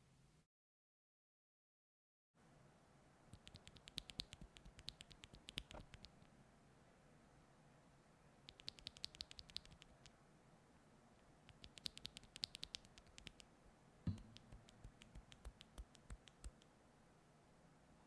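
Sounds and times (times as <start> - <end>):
mechanical keyboard typing: 3.4 - 6.3, 8.5 - 10.1, 11.5 - 13.5.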